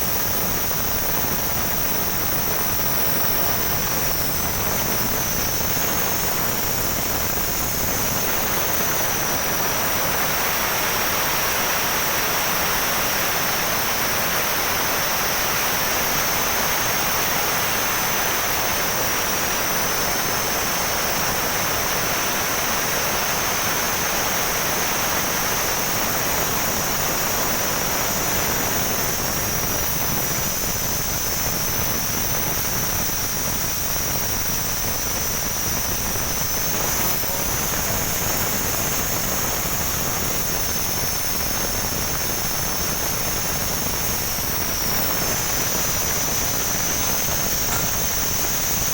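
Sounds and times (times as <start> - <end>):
gas hissing from cylinder valve: 0.0 - 48.9.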